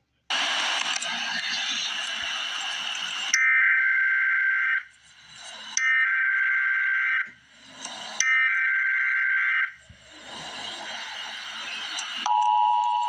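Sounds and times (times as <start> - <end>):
hiss: 0.3 - 3.4, 10.0 - 12.3
warbling digital data tones: 1.0 - 13.0
two-tone attention signal: 12.2 - 13.0.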